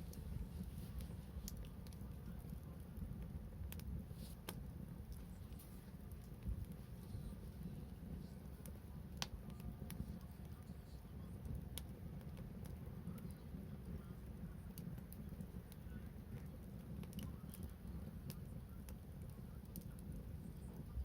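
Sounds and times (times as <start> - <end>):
bonfire crackling and popping: 0.0 - 21.0
low steady rumble: 0.0 - 21.0.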